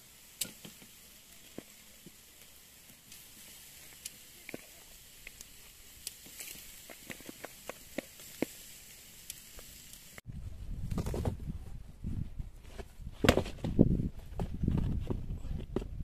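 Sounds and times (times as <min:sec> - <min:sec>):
wood fire crackling and popping: 0:00.0 - 0:11.3.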